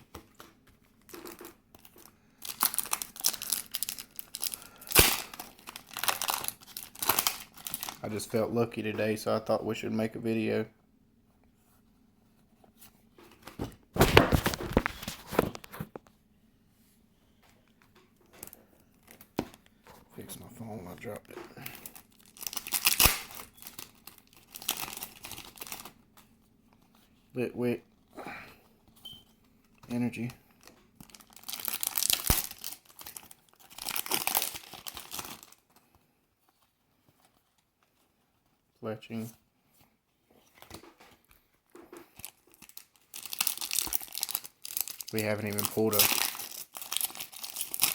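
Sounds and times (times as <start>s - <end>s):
foil wrapper crinkling: 0.3s - 8.3s, 21.0s - 26.0s, 30.0s - 35.9s, 42.0s - 47.9s.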